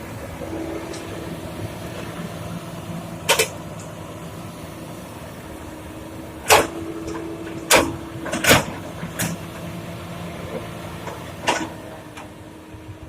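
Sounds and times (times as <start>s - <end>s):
excavator engine running: 0.0s - 13.0s
clanks of rock and steel: 0.4s - 4.1s, 6.4s - 12.3s.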